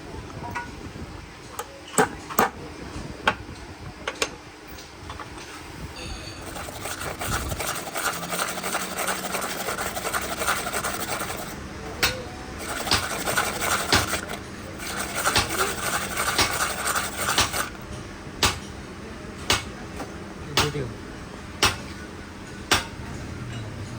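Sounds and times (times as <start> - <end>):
metal rasping and rubbing: 6.4 - 11.6, 12.6 - 17.8.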